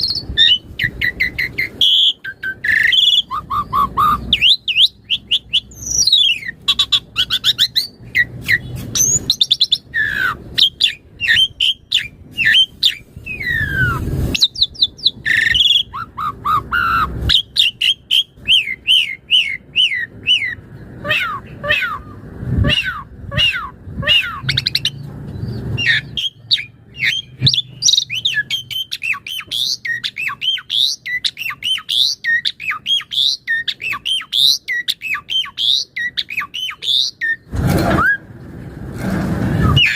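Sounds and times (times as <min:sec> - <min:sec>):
starling singing: 0:00.0 - 0:38.2, 0:39.5 - 0:39.9.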